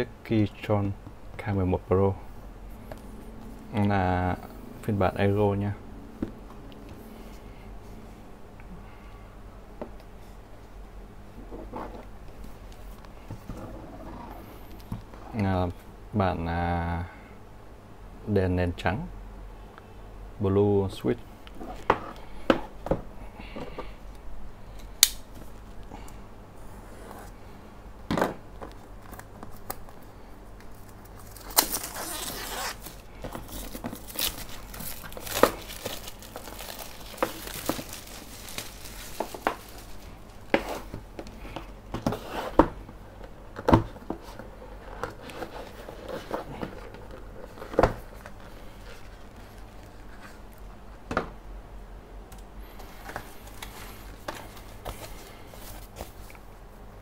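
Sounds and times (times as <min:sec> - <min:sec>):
paper and plastic crinkling: 0:30.6 - 0:41.0.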